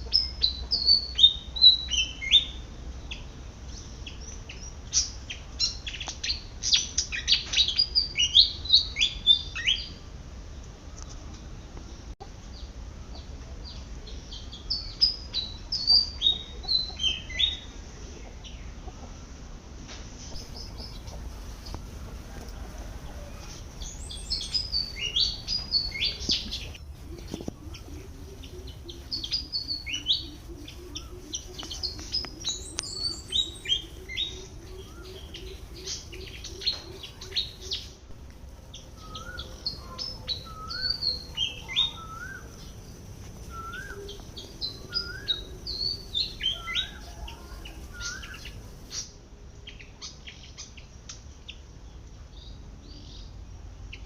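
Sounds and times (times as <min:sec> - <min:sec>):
low wavering hum: 0:20.3 - 0:49.6
bird squeaky calls: 0:38.9 - 0:42.7, 0:43.5 - 0:49.1.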